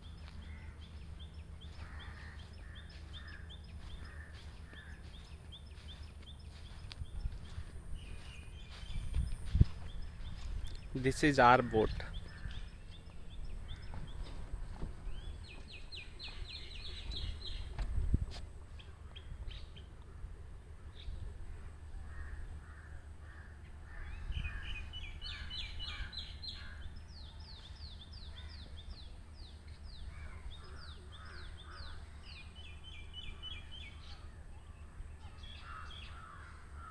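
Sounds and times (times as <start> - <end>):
small birds chirping: 0.0 - 36.9
crows cawing: 0.2 - 0.9, 1.7 - 5.2, 11.4 - 12.7, 22.0 - 24.8, 30.1 - 32.3, 35.4 - 36.9
low steady rumble: 11.9 - 36.9.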